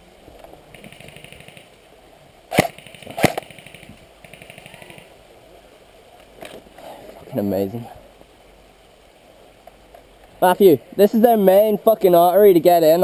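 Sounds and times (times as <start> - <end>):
sharp cracks: 0.7 - 1.8, 2.5 - 5.1.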